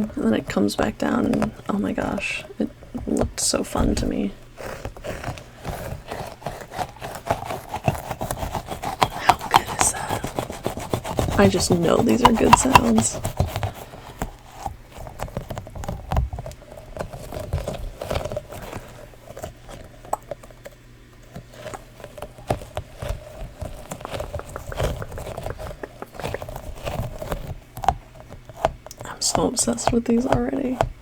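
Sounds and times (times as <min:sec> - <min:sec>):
sticky toys tapping and clicking: 0:05.7 - 0:13.8.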